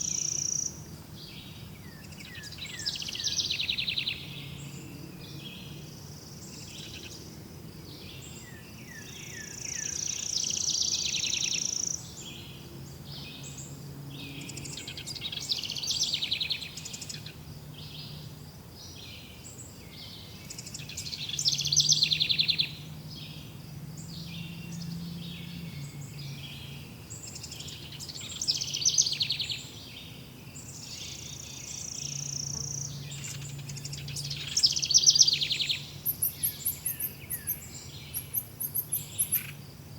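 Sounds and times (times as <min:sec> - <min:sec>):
forest birds singing: 0:00.0 - 0:39.9.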